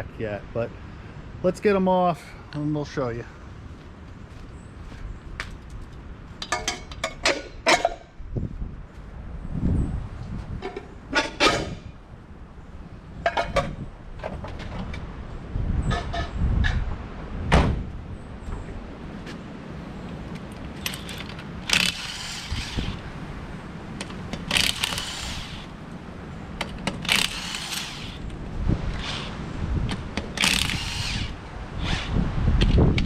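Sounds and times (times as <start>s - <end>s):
impact wrench bursts: 20.8s - 23.0s, 24.4s - 25.7s, 26.8s - 28.3s, 30.2s - 32.1s.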